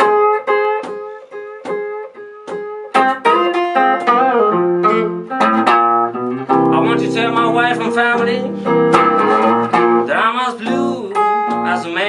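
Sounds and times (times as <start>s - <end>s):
blues guitar playing: 0.0s - 12.0s
person singing: 6.6s - 12.0s.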